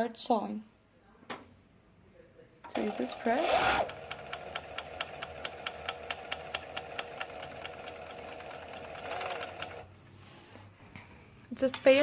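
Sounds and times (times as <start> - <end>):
overlock sewing machine running: 2.7 - 9.9.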